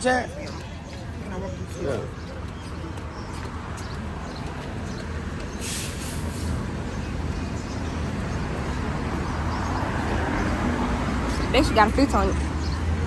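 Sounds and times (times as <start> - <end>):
heavy vehicle rumbling: 2.8 - 13.0.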